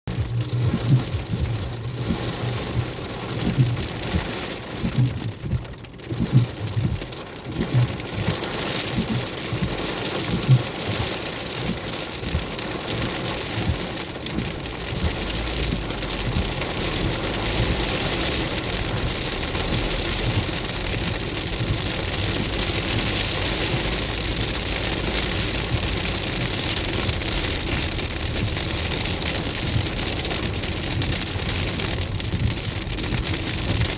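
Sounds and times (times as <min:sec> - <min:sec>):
hail and rain pelting: 0:00.1 - 0:33.9
low thumps: 0:13.6 - 0:33.9.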